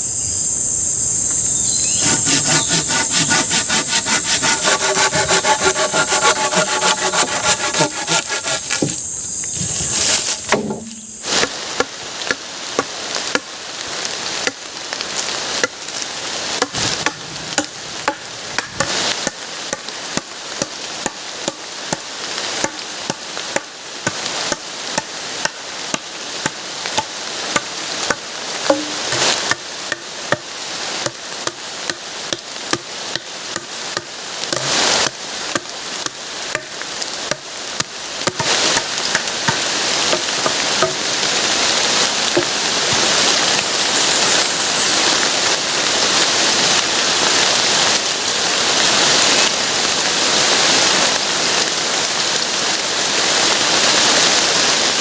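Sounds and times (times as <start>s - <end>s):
hand tool cutting wood: 1.7s - 13.5s, 16.6s - 22.0s, 22.6s - 30.4s, 31.0s - 41.3s
sharp blows on wood: 1.8s - 13.5s, 16.6s - 36.7s, 37.3s - 41.2s.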